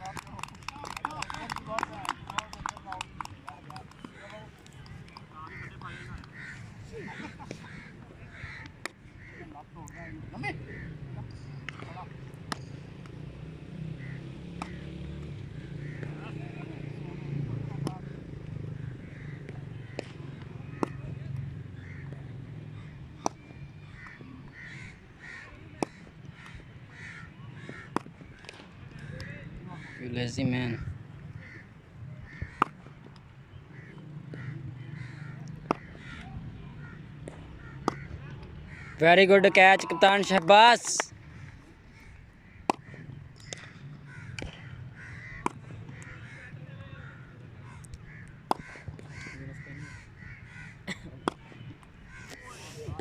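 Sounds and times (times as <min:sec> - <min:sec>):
crows cawing: 0:05.4 - 0:10.1, 0:14.0 - 0:15.0, 0:15.8 - 0:16.2, 0:18.7 - 0:20.0, 0:21.8 - 0:22.2, 0:23.8 - 0:28.4, 0:29.0 - 0:30.1, 0:30.7 - 0:32.7, 0:33.7 - 0:51.0, 0:52.1 - 0:52.5
cricket bat striking ball: 0:35.6 - 0:36.0, 0:37.2 - 0:38.2, 0:42.6 - 0:44.7, 0:45.4 - 0:46.2, 0:48.5 - 0:49.1.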